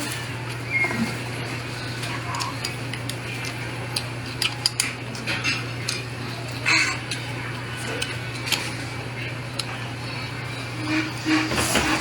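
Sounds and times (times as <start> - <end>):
utensils clinking against bowl: 1.8 - 8.7.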